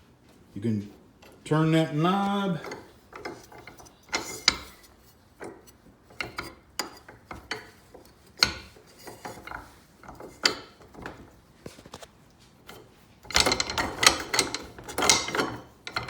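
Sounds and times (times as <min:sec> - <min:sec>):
vise metal clicks and clunks: 0:01.0 - 0:12.0, 0:12.6 - 0:16.0
ratchety rubbing: 0:01.1 - 0:11.0.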